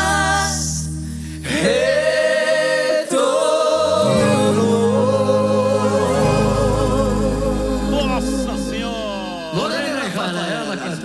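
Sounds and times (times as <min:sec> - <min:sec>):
voices singing in harmony: 0:00.0 - 0:11.0
instrumental backing: 0:03.8 - 0:10.0.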